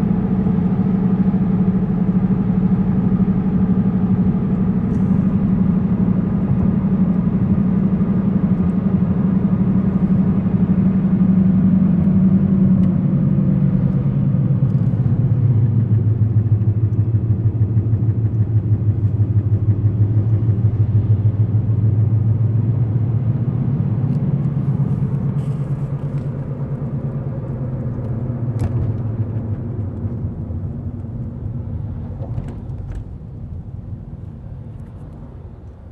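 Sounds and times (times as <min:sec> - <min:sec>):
car low drone while driving: 0:00.0 - 0:35.9.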